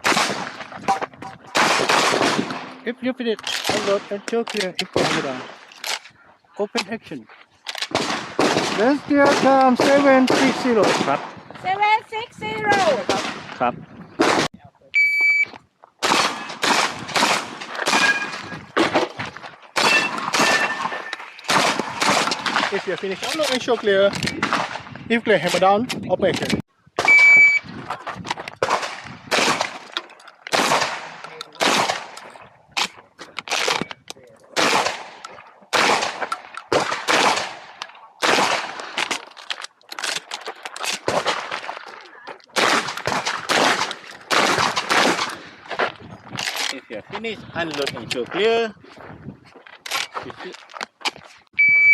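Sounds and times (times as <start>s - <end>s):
shotgun shots with echo: 0.0s - 0.7s, 1.5s - 2.8s, 5.0s - 5.6s, 7.9s - 11.4s, 14.2s - 14.5s, 16.0s - 19.0s, 19.8s - 23.0s, 28.6s - 29.9s, 30.5s - 32.2s, 34.6s - 39.0s, 42.6s - 45.6s.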